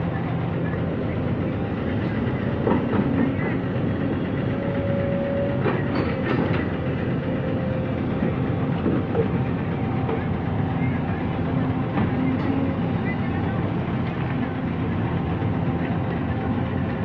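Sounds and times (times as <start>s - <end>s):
excavator diesel engine: 0.0s - 17.0s
metal clanks and knocks: 5.6s - 6.9s.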